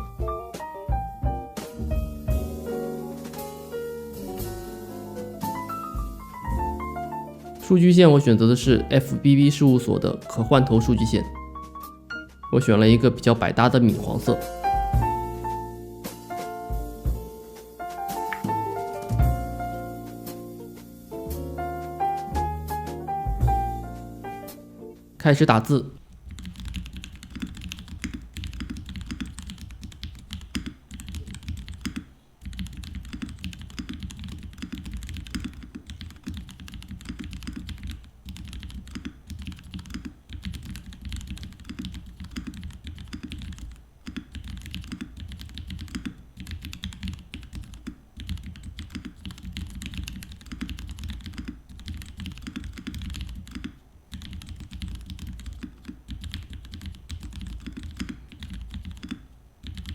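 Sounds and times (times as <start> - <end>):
mechanical keyboard typing: 26.1 - 59.9.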